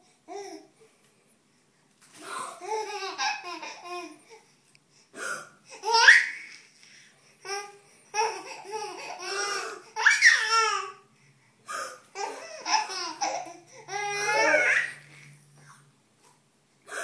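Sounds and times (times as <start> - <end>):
baby laughing hysterically: 2.6 - 4.1, 12.2 - 15.0.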